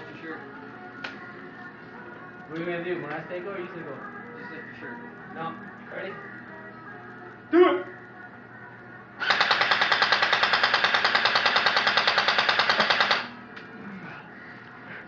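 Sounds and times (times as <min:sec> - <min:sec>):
airsoft rifle firing full auto: 0:09.2 - 0:13.3.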